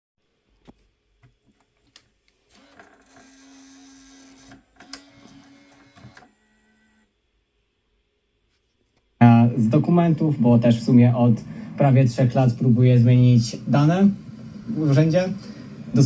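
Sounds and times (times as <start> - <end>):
small motor whirring: 2.5 - 7.1.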